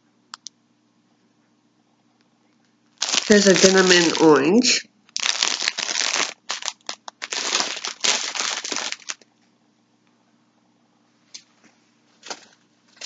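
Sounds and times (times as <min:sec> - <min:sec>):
wrapping crinkling: 0:02.9 - 0:04.5, 0:05.1 - 0:09.3.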